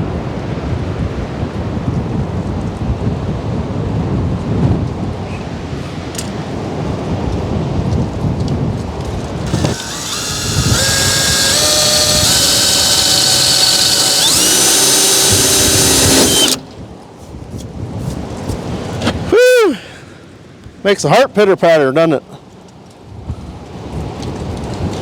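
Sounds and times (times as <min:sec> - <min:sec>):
power drill whining: 0:09.4 - 0:16.7.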